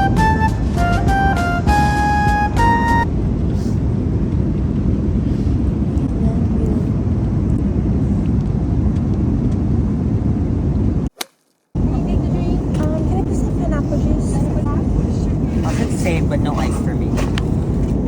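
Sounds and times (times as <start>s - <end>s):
background music: 0.0s - 3.1s
airliner cabin rumble: 0.0s - 11.1s, 11.8s - 18.0s.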